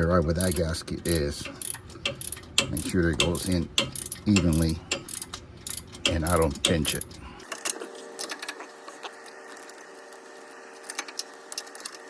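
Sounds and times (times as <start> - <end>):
hand ratchet clicking: 0.4 - 8.5.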